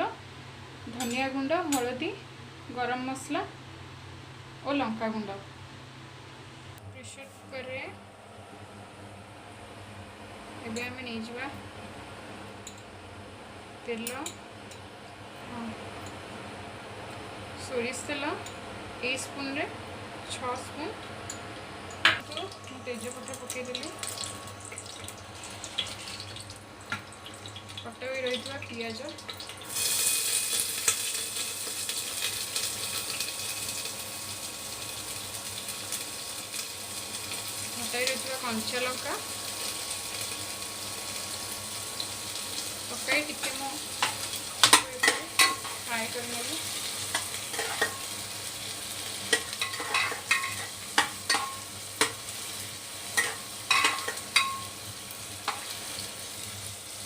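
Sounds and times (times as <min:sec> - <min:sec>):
onions sizzling in oil: 0:20.3 - 0:57.0
oil crackling and popping: 0:22.2 - 0:28.6, 0:29.2 - 0:38.2
spatula clinking against metal pan: 0:49.3 - 0:52.2, 0:53.2 - 0:54.7.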